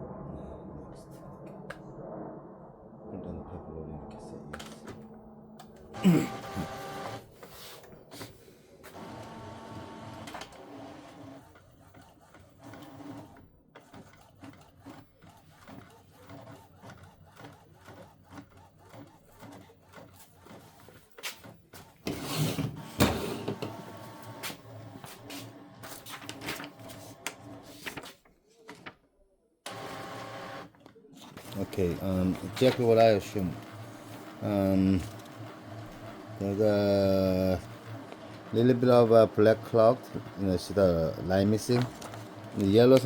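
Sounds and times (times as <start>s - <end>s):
printer motors running: 5.9s - 7.3s, 8.1s - 22.2s, 22.8s - 27.8s, 29.7s - 30.7s, 31.3s - 43.0s
quick printer clicks: 6.3s - 7.2s, 8.9s - 21.9s, 22.8s - 27.6s, 29.7s - 30.7s, 31.3s - 43.0s.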